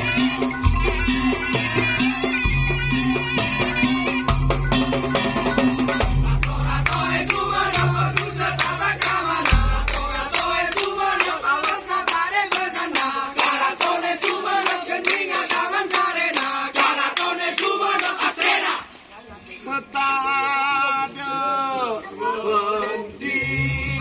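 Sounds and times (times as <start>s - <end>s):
fast percussion strokes: 0.0s - 18.7s
low bass drone: 4.3s - 11.0s.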